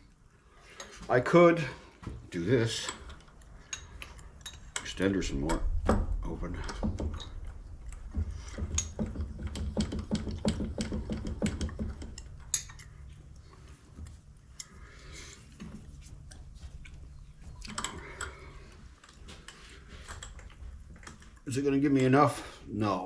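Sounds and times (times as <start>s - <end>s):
steady low hum: 0.0s - 23.0s
metal clicks and knocks of lathe tooling: 2.8s - 12.9s.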